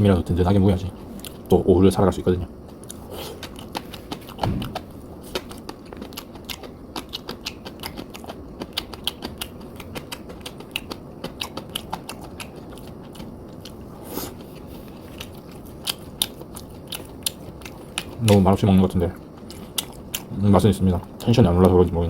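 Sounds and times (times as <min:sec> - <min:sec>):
person chewing: 0:02.6 - 0:18.6, 0:19.2 - 0:20.4.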